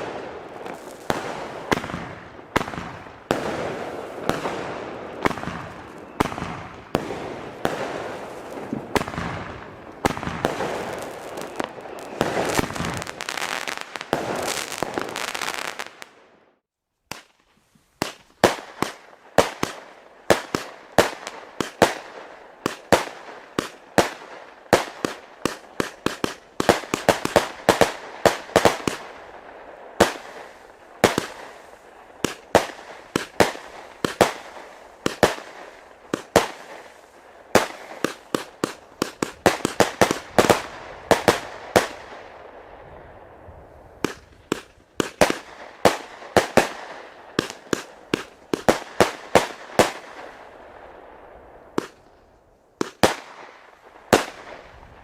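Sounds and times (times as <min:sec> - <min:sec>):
fireworks banging: 0:00.0 - 0:16.2, 0:29.9 - 0:42.2, 0:44.0 - 0:50.4.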